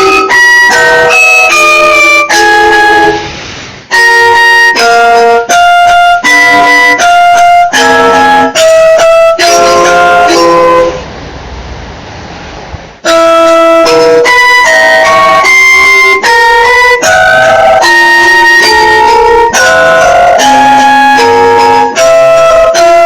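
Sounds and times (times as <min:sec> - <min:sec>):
emergency alert alarm tones: 0:00.0 - 0:11.0
hiss: 0:03.2 - 0:03.9.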